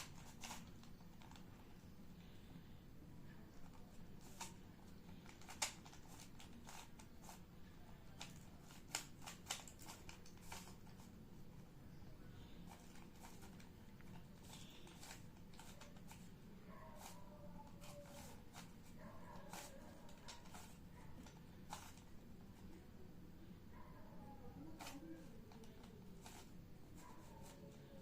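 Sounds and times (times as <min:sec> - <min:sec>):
puzzle cube plastic clicks: 0:00.0 - 0:01.6, 0:03.6 - 0:11.2, 0:12.6 - 0:16.3, 0:17.0 - 0:22.8, 0:24.6 - 0:28.0.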